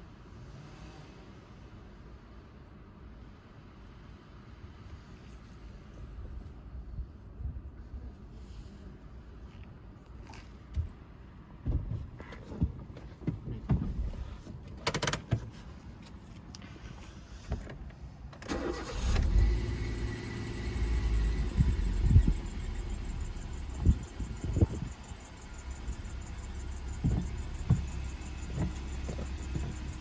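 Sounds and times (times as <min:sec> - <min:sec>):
car engine starting and idling: 0:18.3 - 0:30.0.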